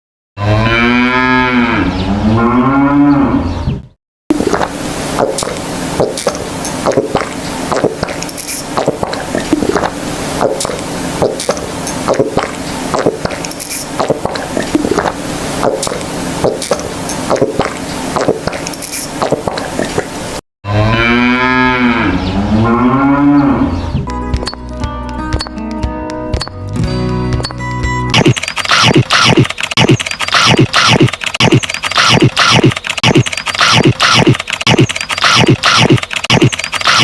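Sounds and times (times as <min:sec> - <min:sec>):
cow mooing: 0:00.4 - 0:03.6, 0:20.6 - 0:23.9
noisy background: 0:04.3 - 0:20.4, 0:26.4 - 0:37.0.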